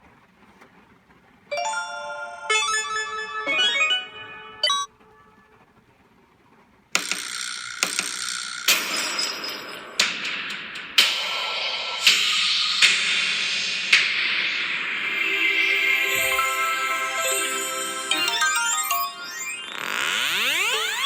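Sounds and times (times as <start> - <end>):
bright chime jingle: 1.5 - 4.9, 15.0 - 20.2
shimmering bursts with ringing tones: 12.0 - 21.0.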